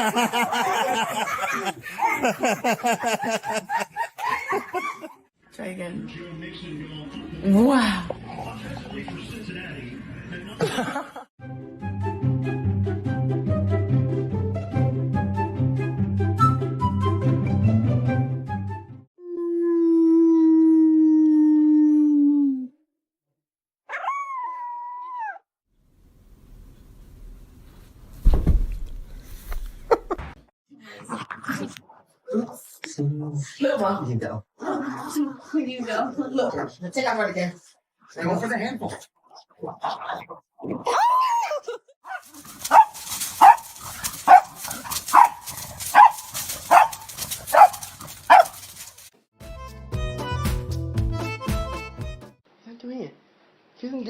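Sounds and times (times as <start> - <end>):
dog howling: 23.9 - 25.4
loud thump: 28.2 - 29.2
dog barking: 42.0 - 49.0.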